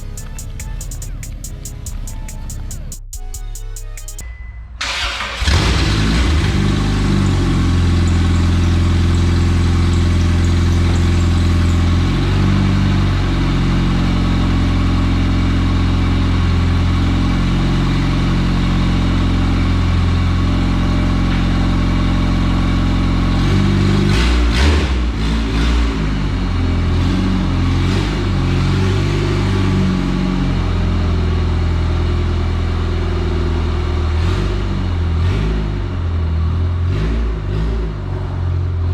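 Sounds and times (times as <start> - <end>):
car engine and exhaust driving: 0.0 - 4.2, 4.8 - 38.9
sharp exhaust cracks: 0.0 - 4.2.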